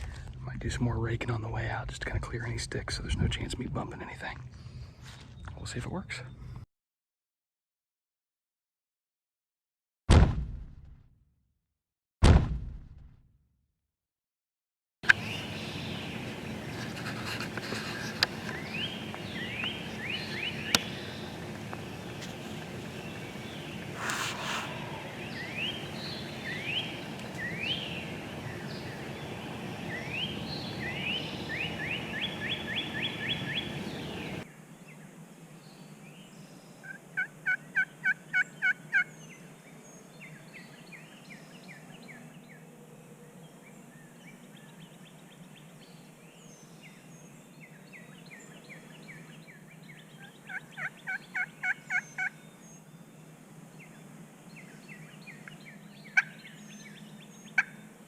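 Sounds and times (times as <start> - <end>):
wild turkey calling: 15.0 - 34.4, 36.8 - 39.1, 50.2 - 52.4, 55.3 - 57.9
songbirds whistling: 15.0 - 34.5, 43.5 - 58.0.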